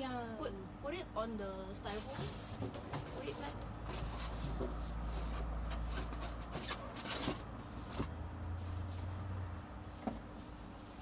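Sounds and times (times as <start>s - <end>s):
low steady hum: 0.0s - 11.0s
monitor rubbing and knocking: 1.8s - 9.2s.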